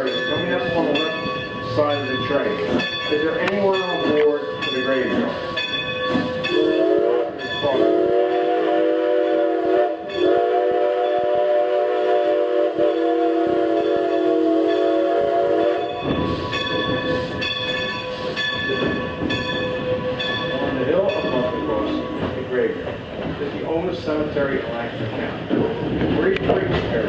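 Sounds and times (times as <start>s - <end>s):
rhythmic clicking of train wheels: 0.0s - 27.0s
train running rumble: 0.0s - 27.0s
steam locomotive whistle blasts: 5.4s - 18.5s.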